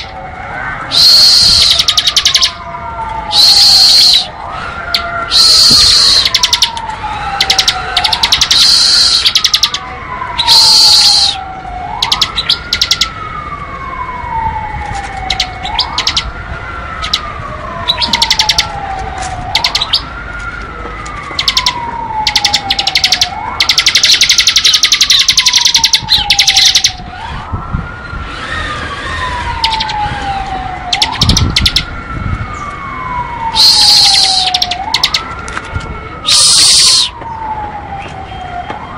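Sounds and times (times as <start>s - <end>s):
rising and sliding siren-like tone: 0.0s - 38.9s
bird high rapid trill: 0.9s - 2.6s, 3.3s - 4.3s, 5.3s - 6.7s, 7.4s - 9.8s, 10.4s - 11.4s, 17.9s - 18.6s, 21.4s - 27.0s, 33.6s - 35.2s, 36.3s - 37.1s.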